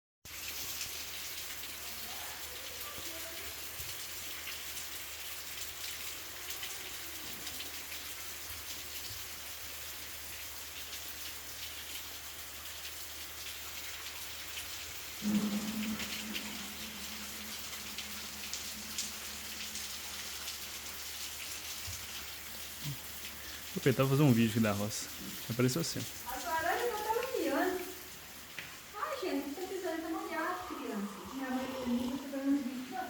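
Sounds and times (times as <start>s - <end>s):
rain falling: 0.3s - 33.0s
low pitched hum: 15.2s - 19.7s.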